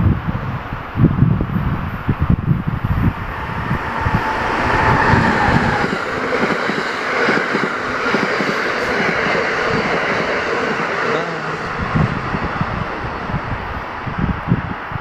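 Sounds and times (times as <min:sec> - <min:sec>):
train wheels rushing on rail: 0:00.3 - 0:15.0
thin whine: 0:02.5 - 0:07.4.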